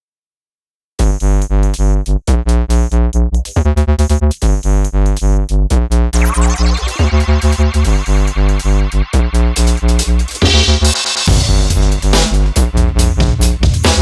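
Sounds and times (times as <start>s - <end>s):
electronic music with synth bass: 5.2s - 14.0s
rising synth sweep: 6.2s - 12.0s.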